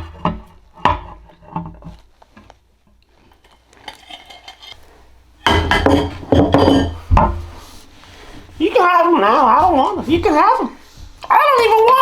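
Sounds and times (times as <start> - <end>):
cutlery and dishes clinking: 3.4 - 4.8, 5.4 - 7.4.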